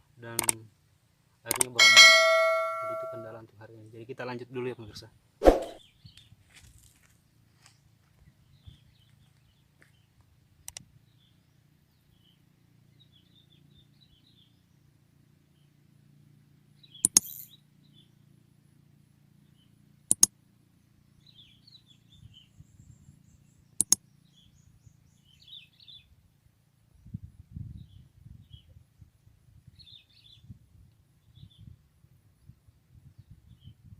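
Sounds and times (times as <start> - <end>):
sharp clicks: 0.4 - 0.6, 1.5 - 1.8
small birds chirping: 21.2 - 26.1.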